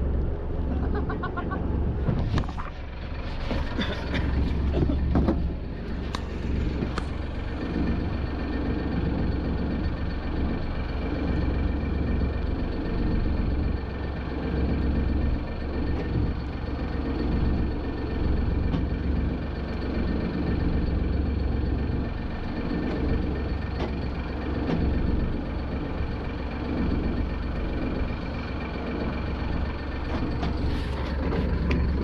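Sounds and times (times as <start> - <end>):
boat engine droning: 0.0 - 32.0
knocks and clatter on board: 3.5 - 5.6.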